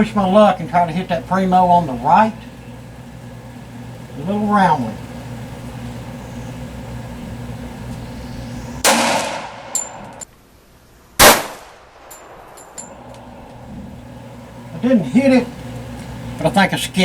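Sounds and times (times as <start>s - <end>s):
high metallic ping: 8.8s - 10.2s
pistol shots: 8.8s - 10.2s, 11.2s - 12.6s.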